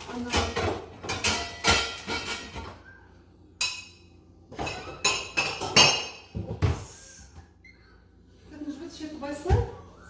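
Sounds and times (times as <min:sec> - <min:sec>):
dishes and utensils clinking: 0:00.0 - 0:02.9, 0:03.6 - 0:06.7.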